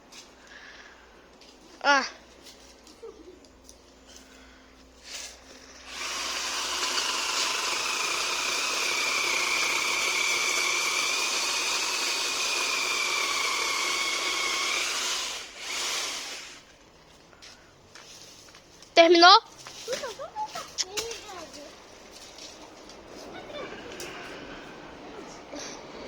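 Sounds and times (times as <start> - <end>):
chainsaw cutting wood: 5.8 - 16.7.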